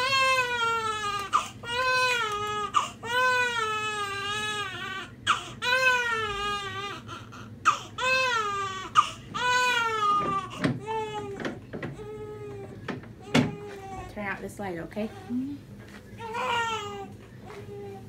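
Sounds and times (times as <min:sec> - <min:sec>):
baby crying: 0:00.0 - 0:11.4, 0:16.2 - 0:18.0.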